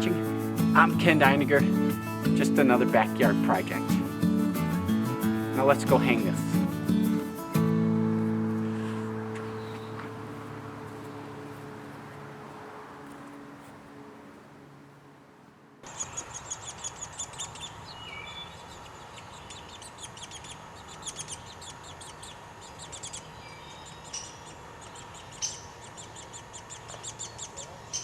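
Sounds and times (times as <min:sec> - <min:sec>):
birds chirping: 0:00.0 - 0:28.0
whistled bird notes: 0:08.6 - 0:14.3.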